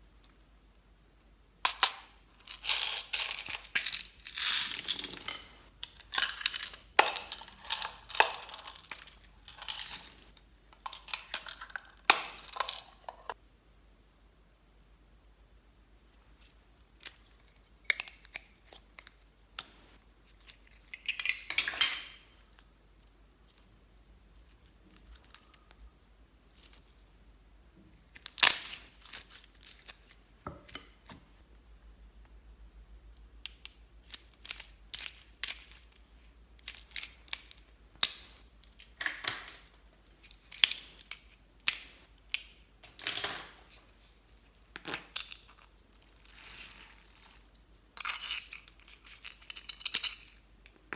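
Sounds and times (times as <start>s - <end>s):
crackling crinkling rustles: 2.3s - 13.4s.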